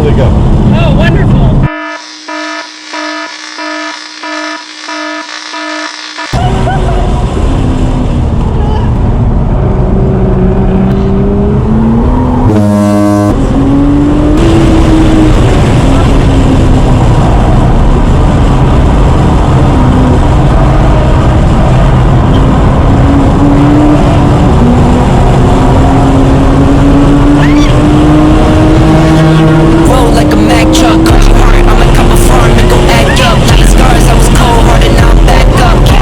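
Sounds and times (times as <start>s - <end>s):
road and wind noise: 0.0s - 1.7s, 6.4s - 36.0s
car engine revving through gears: 7.2s - 36.0s.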